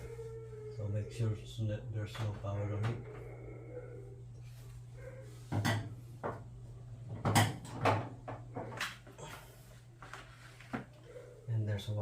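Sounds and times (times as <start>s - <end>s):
low hum: 0.0s - 7.2s.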